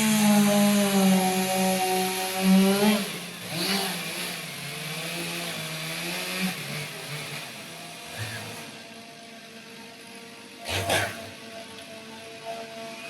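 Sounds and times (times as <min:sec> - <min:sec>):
chainsaw cutting log: 0:00.0 - 0:08.8, 0:10.6 - 0:11.4.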